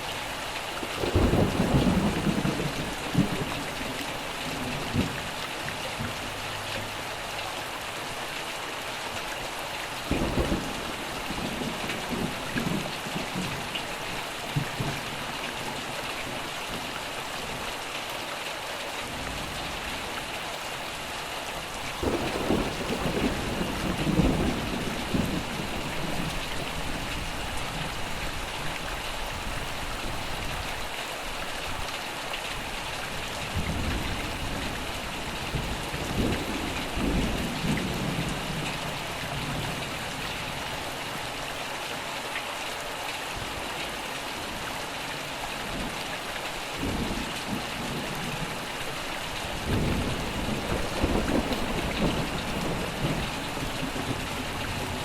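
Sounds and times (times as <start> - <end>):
heavy rain falling: 0.0 - 55.0
thunder rumbling: 1.0 - 4.0, 22.0 - 27.9, 49.4 - 55.0.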